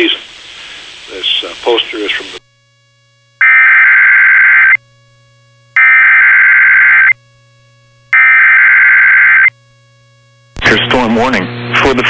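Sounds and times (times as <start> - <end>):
buzzy digital data bursts: 0.0 - 2.7, 3.3 - 4.8, 5.8 - 7.2, 8.1 - 9.6
faint steady hum: 0.0 - 12.0.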